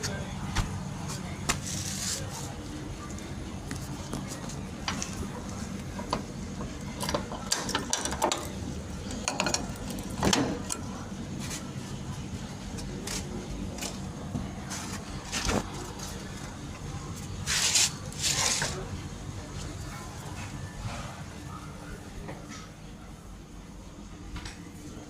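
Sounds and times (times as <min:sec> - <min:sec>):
mechanical clicks and clatters: 0:07.0 - 0:10.8.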